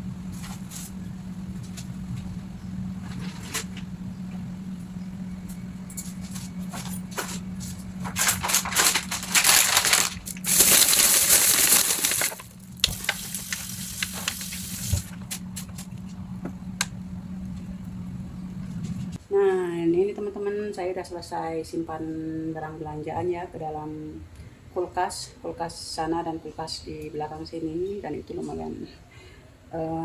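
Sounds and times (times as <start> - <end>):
steady low hum: 0.0 - 30.0
plastic bags rustling and crinkling: 7.2 - 15.2.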